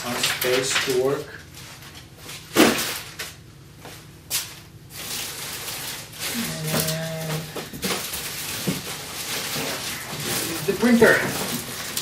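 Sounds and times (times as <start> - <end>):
low steady hum: 0.0 - 12.0
packaging rustling: 4.9 - 12.0.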